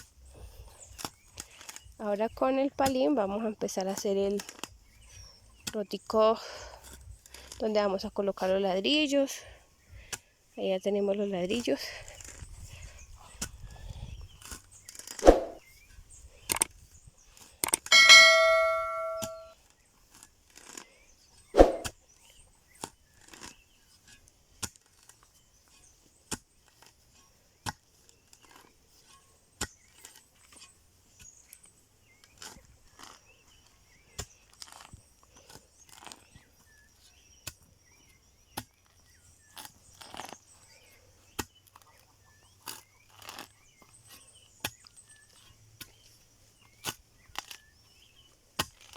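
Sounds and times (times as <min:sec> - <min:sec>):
metal shovel clanging: 0:17.9 - 0:19.5.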